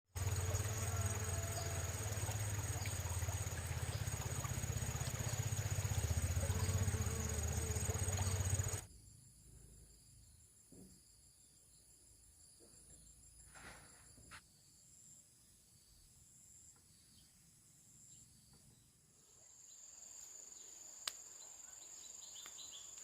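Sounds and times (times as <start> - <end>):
insects shrilling: 4.2 - 8.8.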